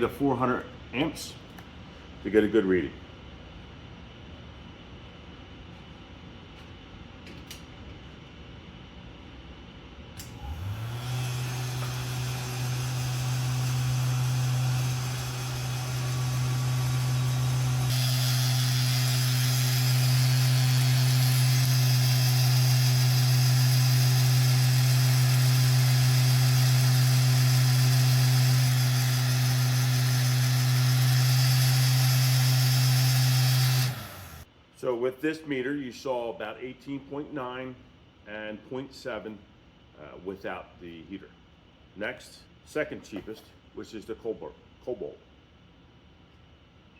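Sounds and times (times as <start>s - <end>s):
fan heater humming: 10.1s - 34.5s.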